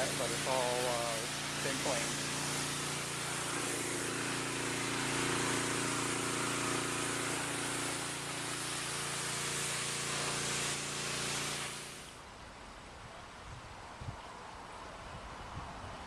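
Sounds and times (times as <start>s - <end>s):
pressure washer engine running: 0.0s - 12.2s.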